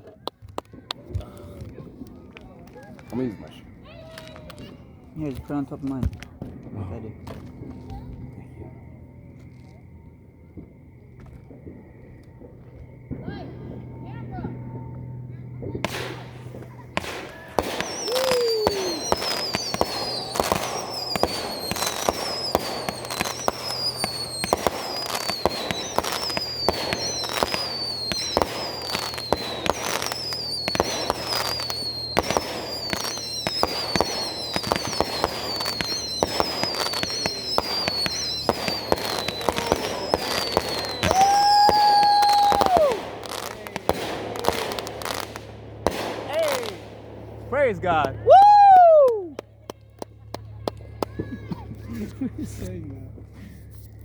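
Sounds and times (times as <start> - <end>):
fireworks bangs and crackles: 0.0 - 54.0
steady whistling tone: 8.2 - 49.4
high falling whistles: 15.6 - 49.4.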